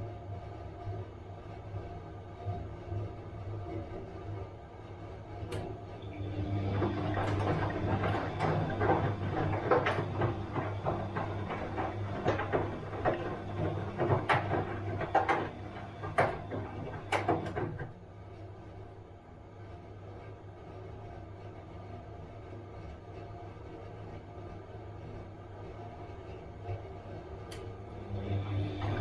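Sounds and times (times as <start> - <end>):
washing machine motor hum: 0.0 - 29.0
laundry knocking in drum: 6.4 - 17.9.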